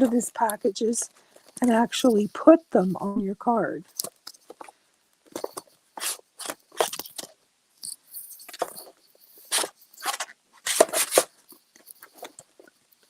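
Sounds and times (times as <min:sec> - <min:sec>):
plastic packages crinkling: 0:03.9 - 0:07.4.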